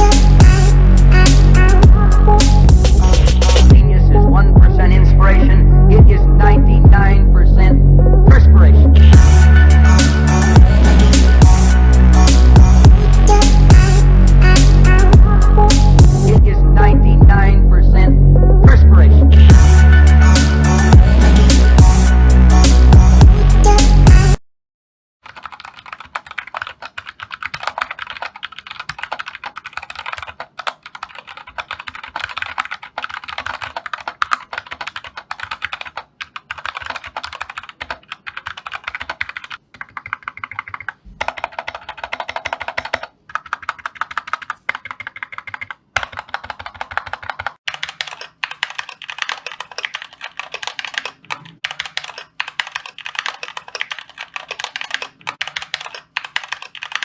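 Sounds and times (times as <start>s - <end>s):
keyboard typing: 25.2s - 57.0s.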